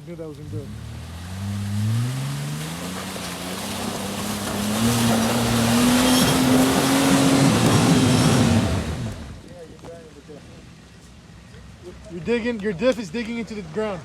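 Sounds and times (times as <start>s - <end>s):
tyres churning mud: 0.0s - 9.8s
off-road vehicle engine revving: 0.0s - 9.9s.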